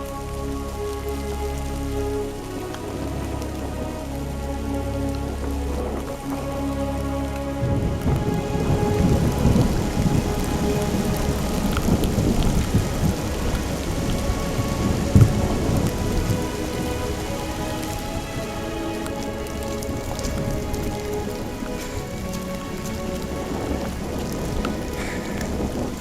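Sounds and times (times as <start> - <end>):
heavy rain falling: 0.0 - 26.0
rolling thunder rumble: 5.3 - 26.0.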